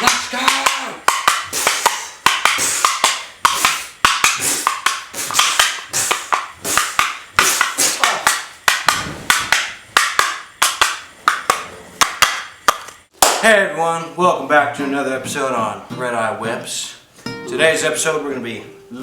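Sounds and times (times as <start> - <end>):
sharp percussive hits: 0.0 - 13.5.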